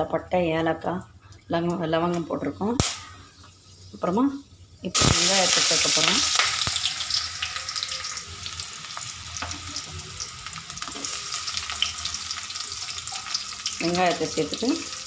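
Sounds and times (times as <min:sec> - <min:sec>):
crackles and pops: 0:01.7 - 0:03.6, 0:05.0 - 0:08.2
onions sizzling in oil: 0:02.4 - 0:15.0.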